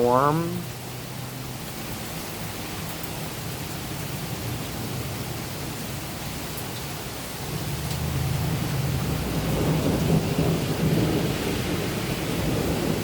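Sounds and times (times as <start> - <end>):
steady rain hissing: 0.0 - 13.0
low rumble of thunder: 7.5 - 13.0.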